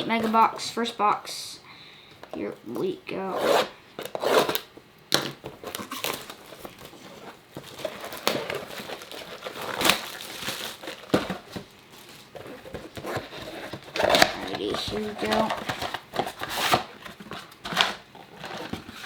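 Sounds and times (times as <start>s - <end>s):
plastic wrap crinkling and tearing: 5.6s - 19.0s.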